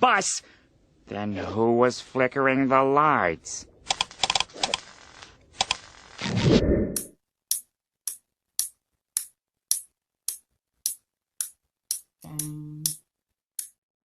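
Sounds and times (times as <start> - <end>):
sharp clock ticking: 7.0 - 13.0.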